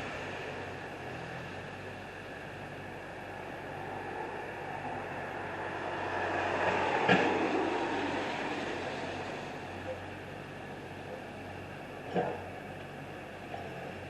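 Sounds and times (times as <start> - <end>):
low engine hum: 0.0 - 14.0
vehicle passing: 3.7 - 9.9.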